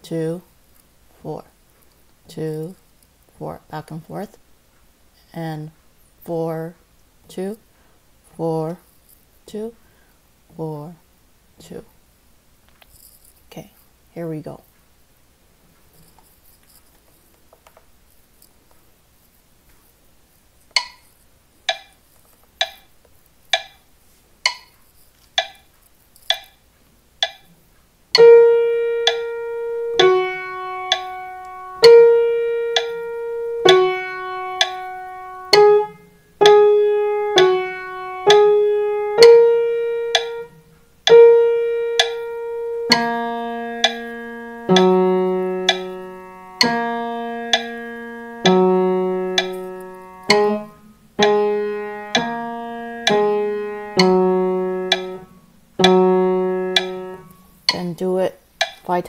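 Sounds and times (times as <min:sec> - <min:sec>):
piano doorbell tune: 0:28.2 - 0:57.3.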